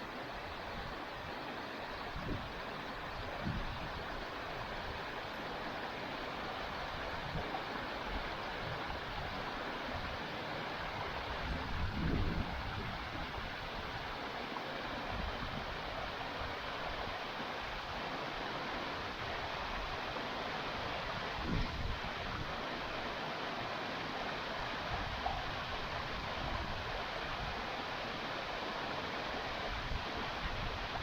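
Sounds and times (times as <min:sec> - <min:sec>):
water rushing from small waterfall: 0:00.0 - 0:31.0
wind buffeting microphone: 0:11.3 - 0:14.0.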